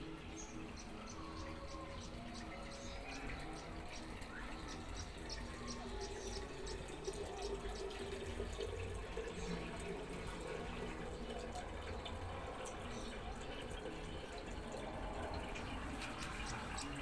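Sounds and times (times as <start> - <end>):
water trickling and dripping: 0.0 - 17.0.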